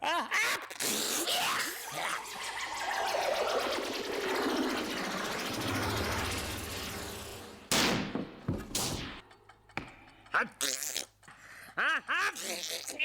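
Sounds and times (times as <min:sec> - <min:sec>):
cartoon sneeze: 0:00.0 - 0:02.2, 0:10.4 - 0:11.2, 0:12.2 - 0:13.0.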